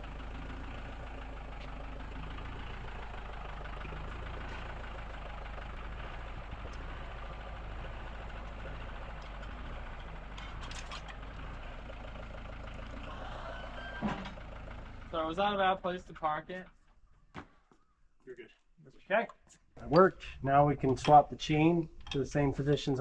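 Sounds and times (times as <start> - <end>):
forklift engine idling: 0.0 - 16.9.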